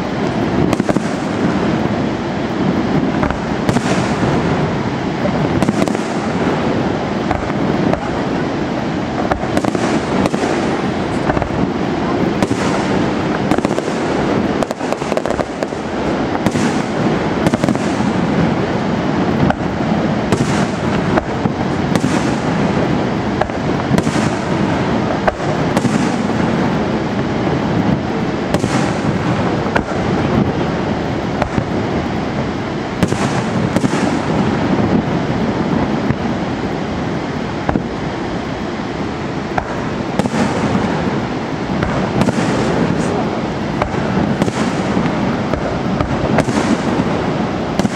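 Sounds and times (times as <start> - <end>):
fireworks bangs and crackles: 0.0 - 47.9.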